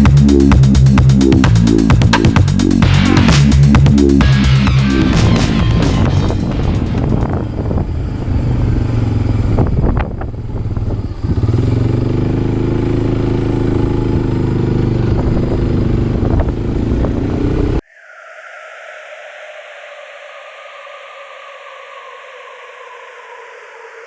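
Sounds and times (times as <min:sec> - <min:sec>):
atv engine running: 0:06.6 - 0:17.8.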